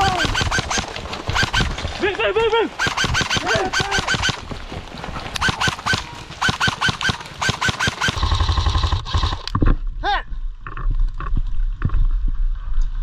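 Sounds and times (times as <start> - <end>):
airsoft gun firing bursts: 0.0 - 1.9, 2.8 - 4.4, 5.4 - 9.4.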